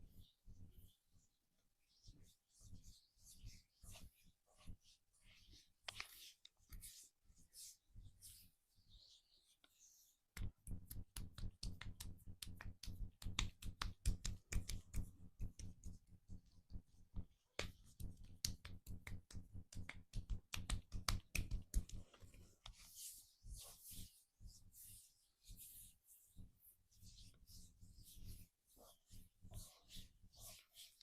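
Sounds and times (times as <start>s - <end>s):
hands rubbing skin: 2.6s - 26.3s, 26.9s - 31.0s
hands slapping a back: 10.3s - 16.0s, 16.7s - 22.3s.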